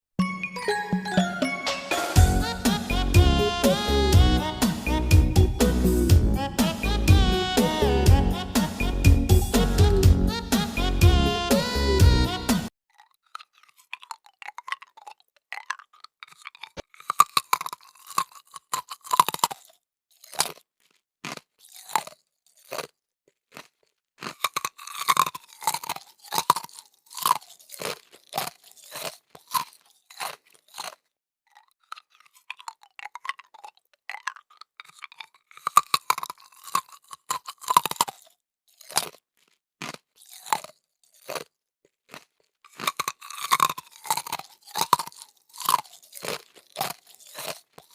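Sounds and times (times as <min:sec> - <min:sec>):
chewing crispy pork skin: 0:12.9 - 0:47.9.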